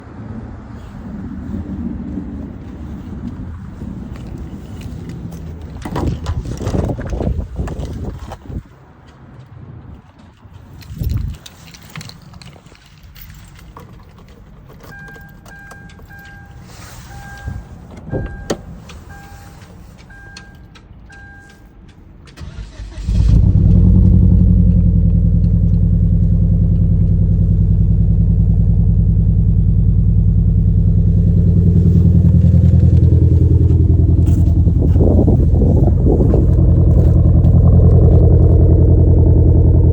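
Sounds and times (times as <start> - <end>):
car engine cranking and idling: 0.1 - 8.7, 9.9 - 39.9
car warning chime beeping: 14.9 - 22.8.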